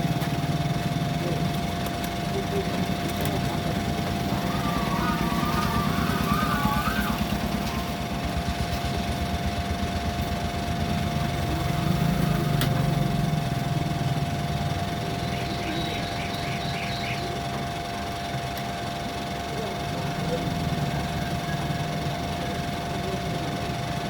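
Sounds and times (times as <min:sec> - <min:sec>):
pulsing low mechanical drone: 0:00.0 - 0:18.4.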